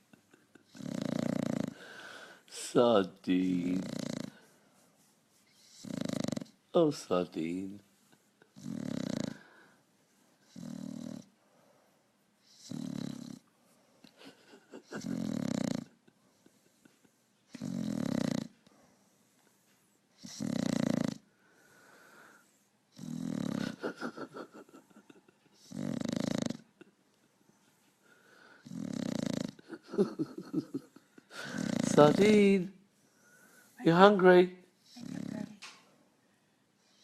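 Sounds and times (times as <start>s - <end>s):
dog snoring: 0.6s - 1.9s, 3.3s - 4.4s, 5.5s - 6.6s, 8.5s - 9.6s, 10.4s - 11.4s, 12.4s - 13.5s, 14.8s - 16.7s, 17.5s - 19.4s, 20.2s - 24.0s, 25.6s - 26.7s, 28.5s - 30.7s, 31.4s - 32.5s, 34.8s - 35.6s.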